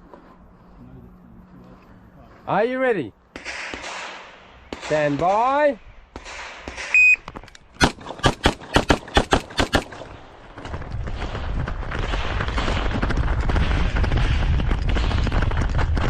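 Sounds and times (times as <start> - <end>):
rapid pistol shots: 7.8 - 10.3, 11.0 - 16.0.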